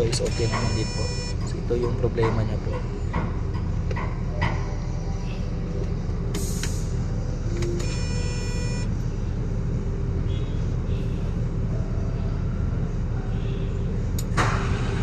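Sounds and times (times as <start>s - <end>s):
diesel engine cranking: 0.0s - 4.4s, 5.5s - 11.7s.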